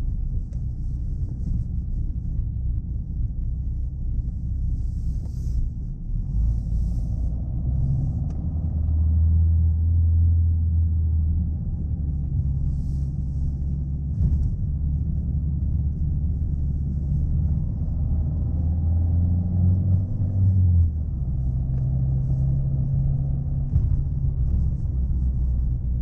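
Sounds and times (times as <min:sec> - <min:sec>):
car engine droning: 0:00.0 - 0:26.0
low road rumble: 0:00.0 - 0:26.0.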